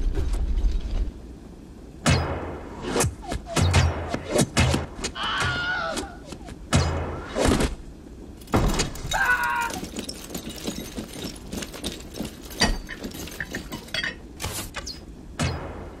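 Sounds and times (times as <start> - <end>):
metallic clinks and rattles: 8.4 - 14.7
heavy hits and crashes: 8.4 - 14.8.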